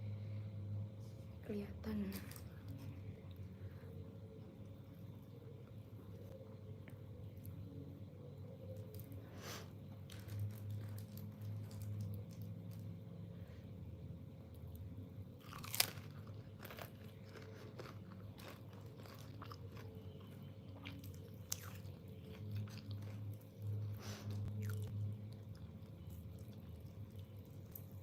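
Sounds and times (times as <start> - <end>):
biting and chewing: 15.4 - 28.0.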